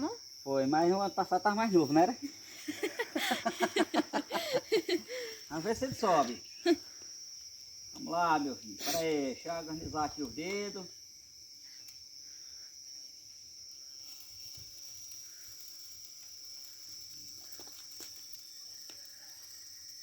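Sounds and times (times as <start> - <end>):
crickets chirring: 0.0 - 20.0.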